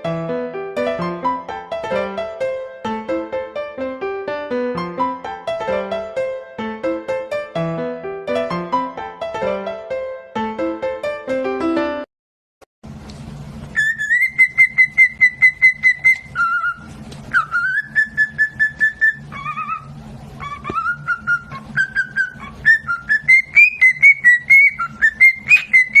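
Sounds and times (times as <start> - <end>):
steady low hum: 12.9 - 26.0
parrot whistling: 13.8 - 26.0.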